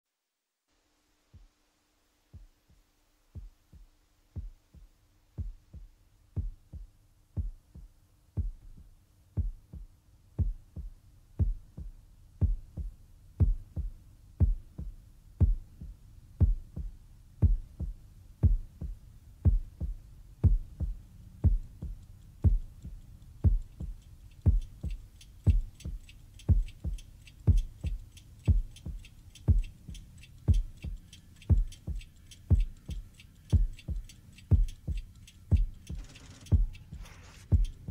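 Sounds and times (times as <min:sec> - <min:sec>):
heartbeat thumps: 0:01.4 - 0:01.6, 0:02.3 - 0:37.9
fast clock ticking: 0:19.5 - 0:37.9.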